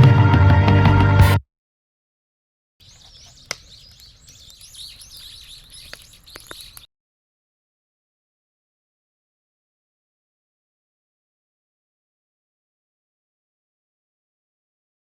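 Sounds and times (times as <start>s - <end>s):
music track: 0.0s - 1.4s
small birds chirping: 2.8s - 6.9s
sharp clicks: 3.3s - 6.9s.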